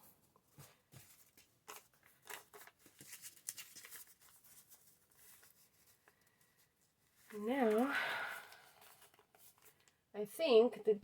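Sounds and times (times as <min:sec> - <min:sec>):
paper scratching and rustling: 0:01.0 - 0:06.1.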